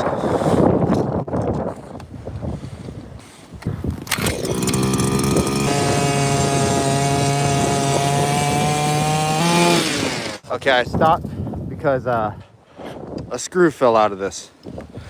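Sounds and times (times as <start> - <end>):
power ice auger motor running: 4.1 - 10.4.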